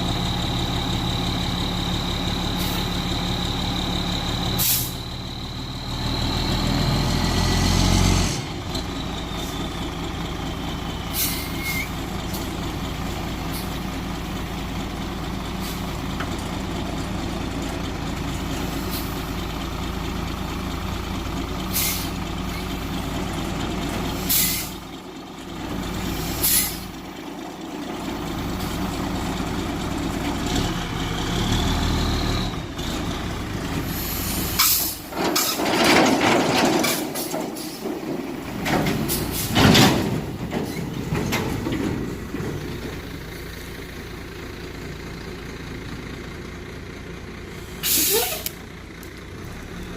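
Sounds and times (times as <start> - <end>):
large diesel engine running: 0.0 - 49.9
short sharp air hisses: 4.6 - 5.0, 11.1 - 11.9, 21.7 - 22.2, 24.3 - 24.7, 26.2 - 26.8, 33.9 - 35.0, 47.8 - 48.5.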